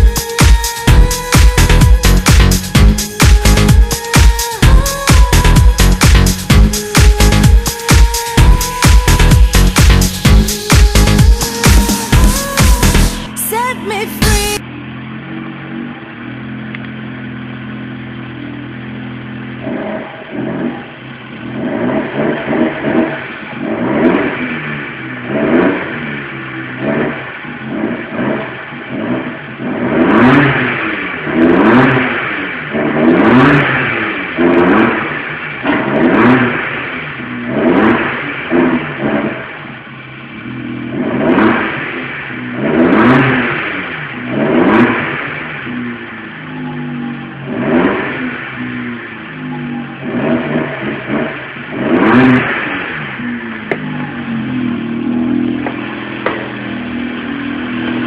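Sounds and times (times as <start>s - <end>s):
car engine idling and revving: 0.0s - 58.0s.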